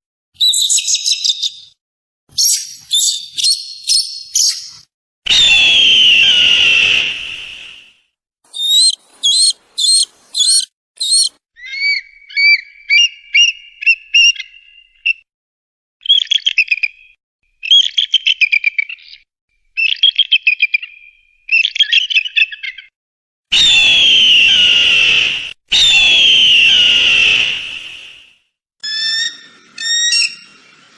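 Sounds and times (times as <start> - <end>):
eagle piping calls: 2.4 - 4.7, 8.5 - 15.0, 28.8 - 30.7
eagle screaming: 5.3 - 7.5, 8.5 - 12.6, 23.5 - 27.8
eagle chattering: 8.5 - 11.3.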